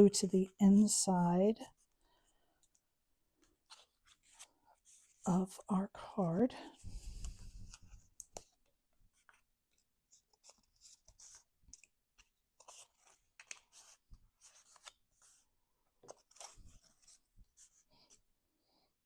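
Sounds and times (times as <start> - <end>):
cardstock rustling and scraping: 3.5 - 5.2, 9.1 - 15.4, 16.0 - 18.2.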